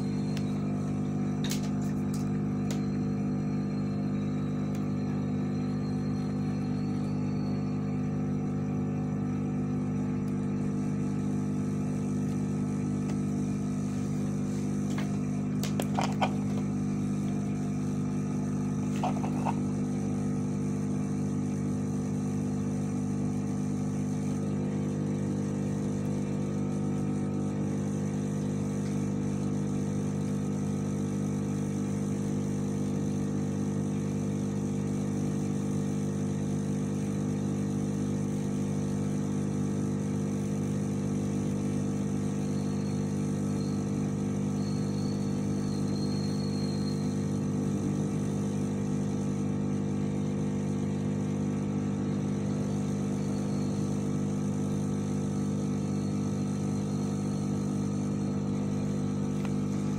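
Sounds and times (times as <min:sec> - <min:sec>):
faint high wavering tone: 0:00.0 - 0:08.4, 0:42.5 - 0:47.4
machine hum: 0:00.0 - 0:59.9.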